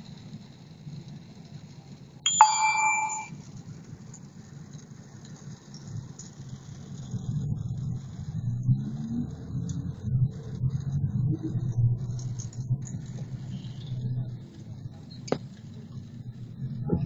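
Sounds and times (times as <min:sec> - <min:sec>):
ringing ding: 0:02.3 - 0:03.3
low vehicle rumble: 0:06.6 - 0:17.0.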